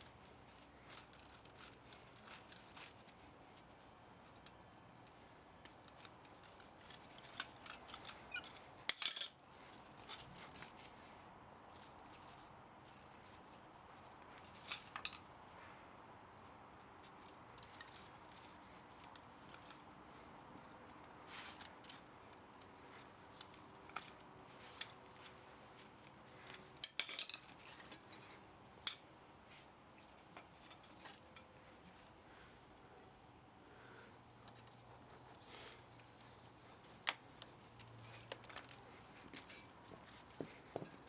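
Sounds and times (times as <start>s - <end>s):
hand tools snipping and clinking metal: 26.4s - 29.0s.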